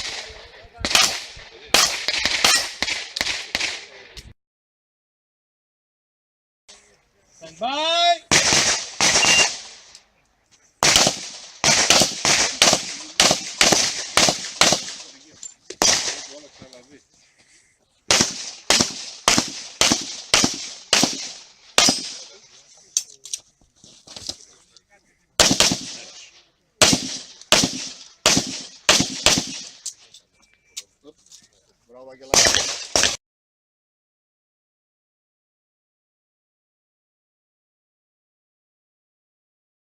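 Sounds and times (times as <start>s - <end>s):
pistol shots: 0.9s - 3.9s, 8.3s - 9.9s, 10.8s - 15.2s, 15.8s - 16.5s, 18.1s - 22.3s, 25.4s - 26.2s, 26.8s - 29.8s, 32.3s - 33.2s.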